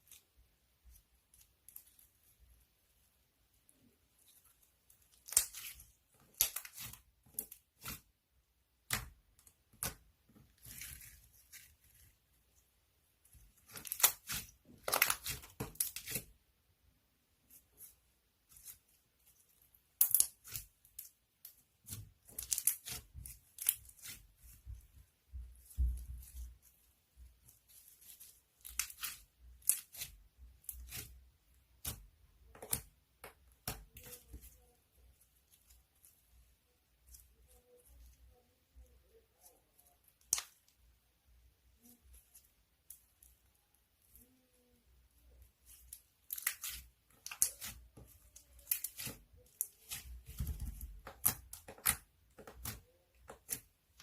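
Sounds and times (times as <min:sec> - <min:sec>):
rustling and tearing: 0:09.7 - 0:12.6, 0:41.9 - 0:54.0.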